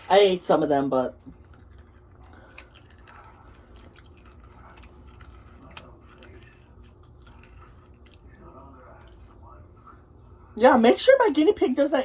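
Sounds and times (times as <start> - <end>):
low steady hum: 0.0 - 12.0
snack being chewed: 1.2 - 9.3.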